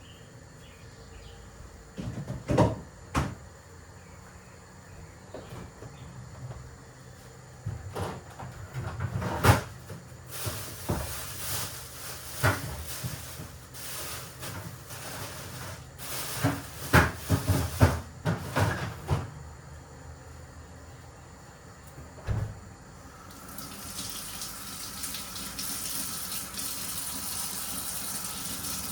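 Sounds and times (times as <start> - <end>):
kitchen items knocking and clattering: 2.0 - 3.4, 7.7 - 19.4.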